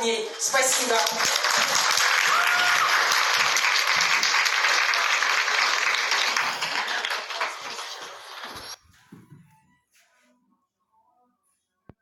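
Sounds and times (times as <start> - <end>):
applause: 0.1 - 8.8.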